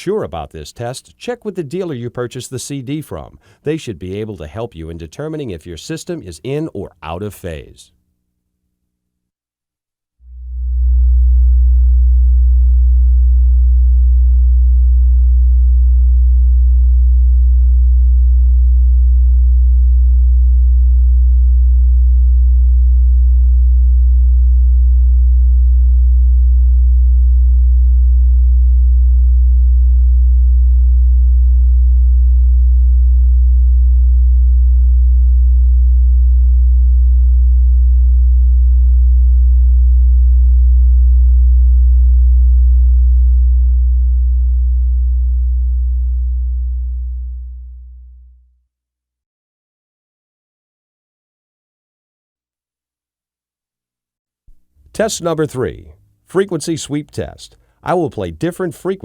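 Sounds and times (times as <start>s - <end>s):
low sine test tone: 10.0s - 48.6s.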